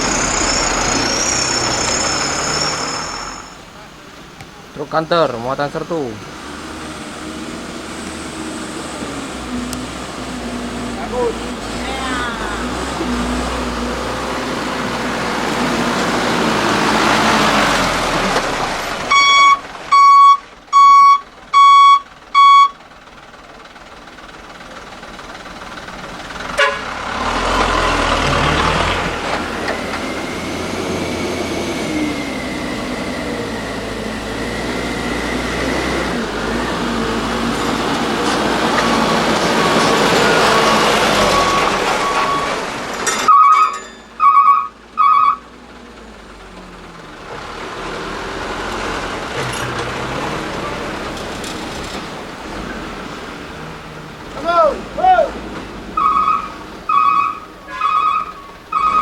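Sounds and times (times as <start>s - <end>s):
heavy trucks passing: 0.0s - 59.0s
horn tooting: 19.1s - 22.8s, 26.5s - 27.1s, 43.2s - 45.5s, 56.0s - 59.0s.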